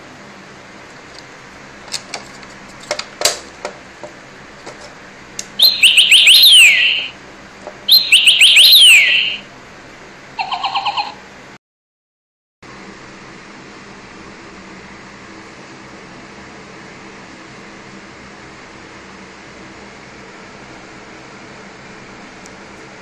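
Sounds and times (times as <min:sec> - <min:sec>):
robotic toy bird chirping: 0:05.6 - 0:07.1, 0:07.9 - 0:09.4, 0:10.4 - 0:11.2
beeping pulses: 0:05.6 - 0:07.2, 0:07.9 - 0:09.4.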